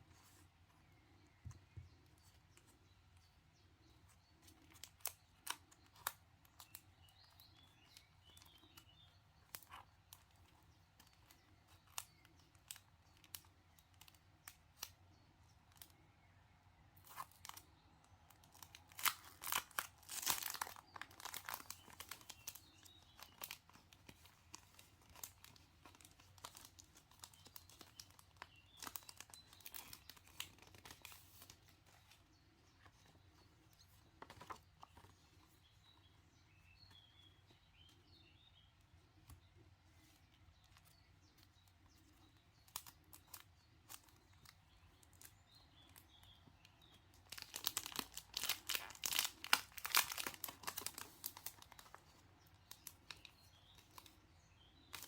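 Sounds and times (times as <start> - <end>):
faint bird chirps: 0.0 - 18.9, 20.4 - 55.0
packaging crinkling and tearing: 18.4 - 31.7, 47.2 - 54.1.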